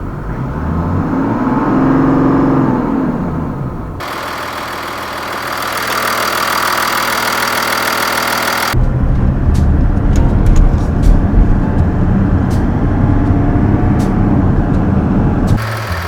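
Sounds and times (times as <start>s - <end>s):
diesel engine revving: 0.0s - 16.0s
steady tones: 3.8s - 16.0s.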